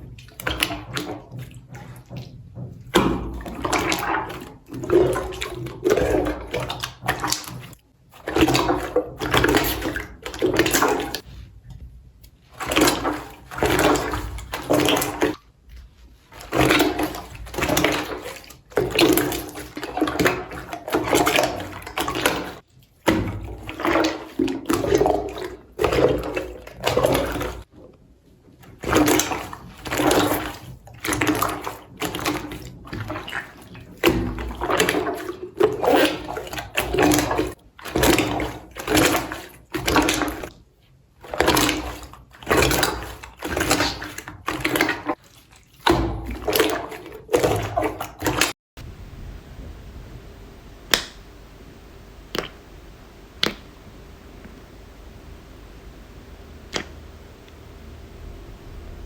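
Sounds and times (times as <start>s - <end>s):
slime squelching: 0.0s - 27.8s, 28.7s - 48.6s, 52.2s - 54.8s, 56.6s - 57.6s.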